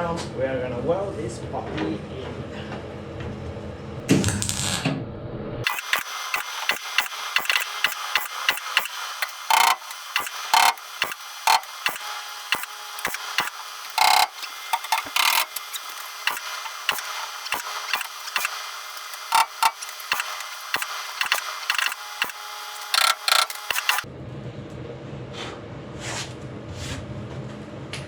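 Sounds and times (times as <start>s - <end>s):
crackling welding arc: 4.2s - 4.9s, 5.6s - 24.1s.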